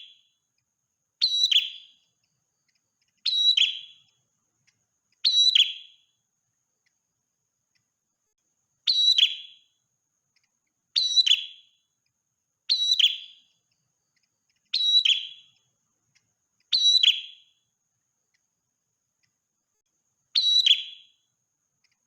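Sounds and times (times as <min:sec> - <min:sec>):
songbird sharp high call: 0:01.2 - 0:02.1, 0:03.1 - 0:04.2, 0:05.2 - 0:06.1, 0:08.8 - 0:09.8, 0:11.0 - 0:11.8, 0:12.7 - 0:13.5, 0:14.6 - 0:15.6, 0:16.7 - 0:17.6, 0:20.3 - 0:21.2.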